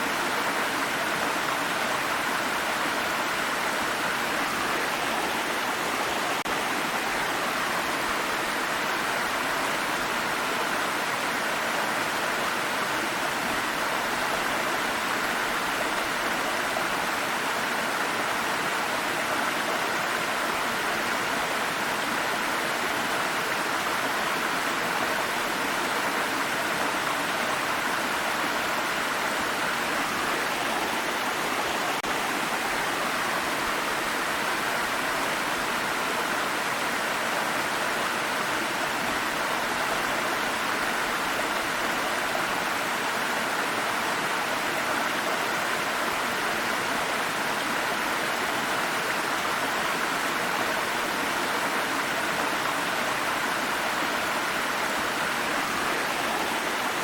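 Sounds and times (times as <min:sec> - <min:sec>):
stream flowing over rocks: 0:00.0 - 0:57.0.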